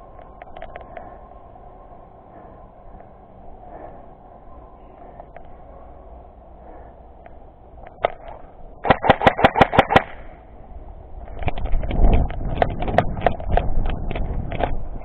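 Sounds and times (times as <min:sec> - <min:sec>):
scattered clicks: 0:00.1 - 0:01.3, 0:07.2 - 0:10.4, 0:11.2 - 0:15.0
airsoft gun shots: 0:08.8 - 0:10.3.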